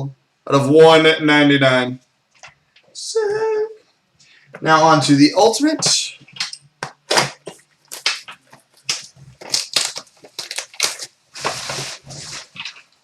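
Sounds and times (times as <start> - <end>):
packaging crackling and tearing: 7.1 - 12.9.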